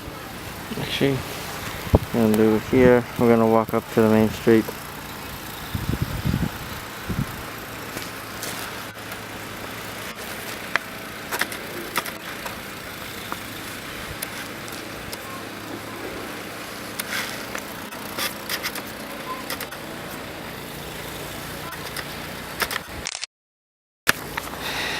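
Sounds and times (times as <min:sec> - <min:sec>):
traffic hiss: 0:00.0 - 0:22.8, 0:24.2 - 0:24.9
wind: 0:00.0 - 0:23.3, 0:24.1 - 0:24.9.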